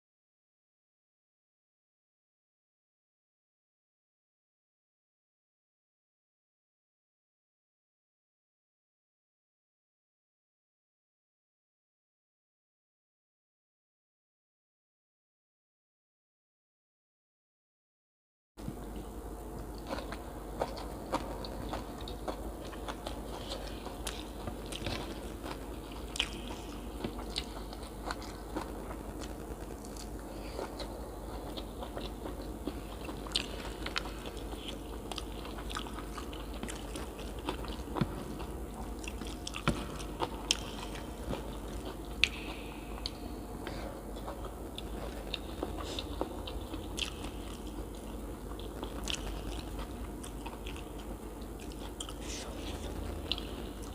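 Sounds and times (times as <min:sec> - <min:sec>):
person chewing and crunching food: 0:18.6 - 0:53.9.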